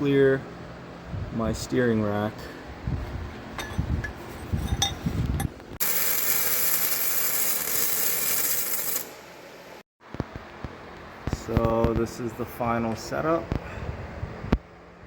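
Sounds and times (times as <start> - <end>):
welder crackling hiss: 5.8 - 9.2.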